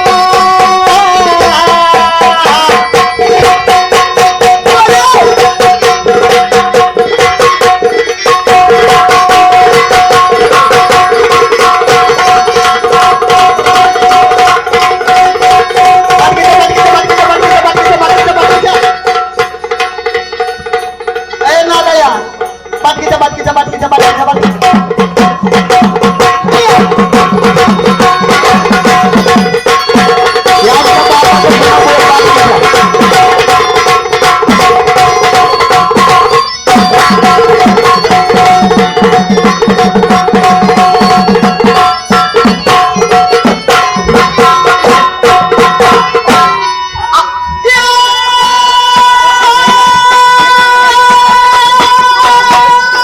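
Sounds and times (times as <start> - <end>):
drum played in fast strokes: 0.0 - 53.0.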